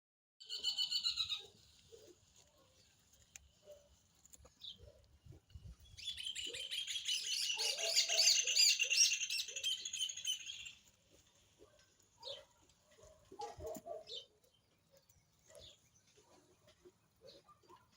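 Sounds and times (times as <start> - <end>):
songbird twittering song: 0.4 - 1.5, 4.6 - 10.8.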